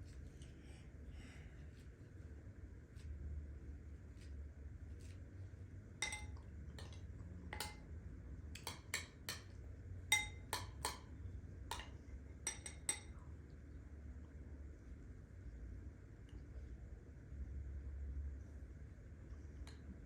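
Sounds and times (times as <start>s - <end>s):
utensil clinking on dishes: 6.0s - 7.9s, 8.5s - 11.1s, 11.7s - 13.3s.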